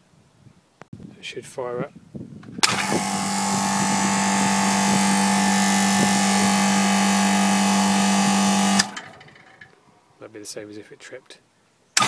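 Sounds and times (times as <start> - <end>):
condenser fan noise: 2.6 - 9.2
refrigeration unit humming: 2.6 - 9.4.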